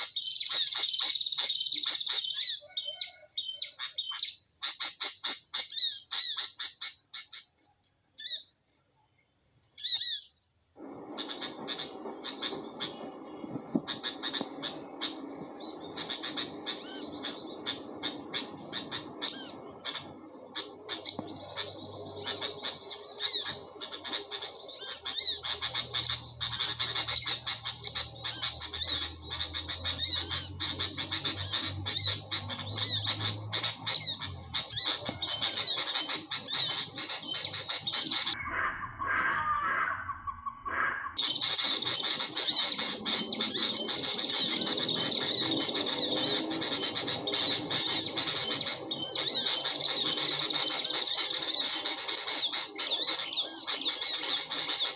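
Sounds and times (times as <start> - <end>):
high squeaky bird chirping: 0.0 - 7.6, 8.2 - 8.6, 9.7 - 10.4, 11.2 - 39.0, 41.2 - 54.9.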